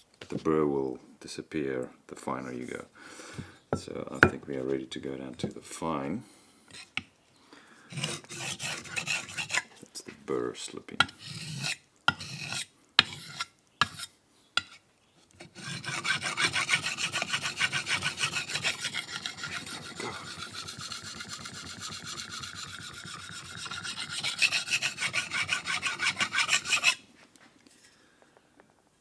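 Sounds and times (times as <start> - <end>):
knife scraping on sharpening stone: 6.7 - 7.1, 7.9 - 9.7, 11.0 - 14.8, 15.4 - 27.0.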